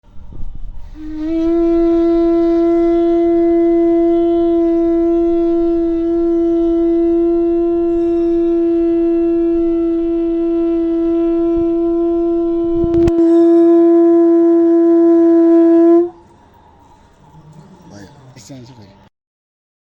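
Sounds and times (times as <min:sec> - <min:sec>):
conch shell horn blown: 0:00.4 - 0:16.3.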